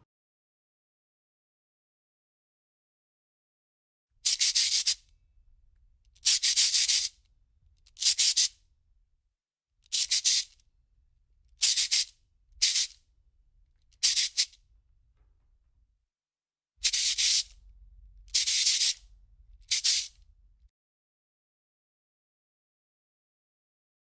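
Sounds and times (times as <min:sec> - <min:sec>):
shaker rattling: 0:04.2 - 0:05.0, 0:06.2 - 0:07.2, 0:07.9 - 0:08.5, 0:09.9 - 0:10.6, 0:11.6 - 0:13.0, 0:14.0 - 0:14.6, 0:16.8 - 0:17.6, 0:18.3 - 0:20.2.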